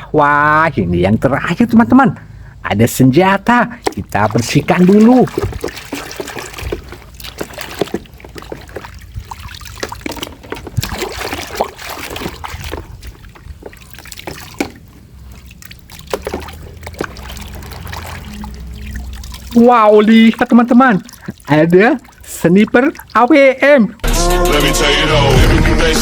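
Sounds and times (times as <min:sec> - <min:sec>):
water splashing and trickling: 0:02.4 - 0:24.1.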